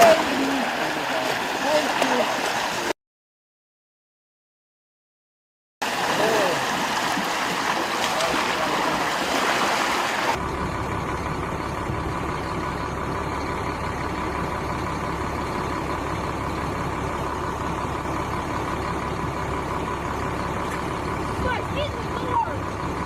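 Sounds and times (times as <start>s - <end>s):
rushing water: 0.0s - 2.9s, 5.8s - 10.4s
low engine rumble: 5.9s - 23.0s.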